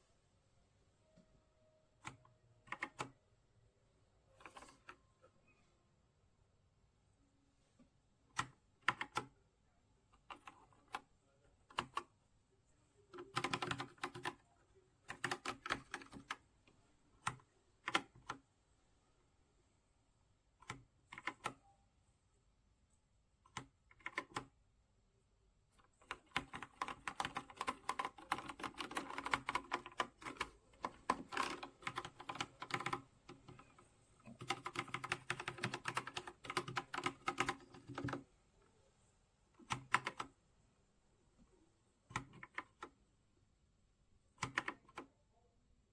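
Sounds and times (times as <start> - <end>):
typing on mechanical keyboard: 2.0 - 3.2, 8.3 - 9.4, 10.2 - 12.1, 13.1 - 16.5, 17.2 - 18.4, 20.6 - 21.8, 23.5 - 24.6, 25.8 - 38.3, 39.6 - 40.4, 42.1 - 43.0, 44.4 - 45.1.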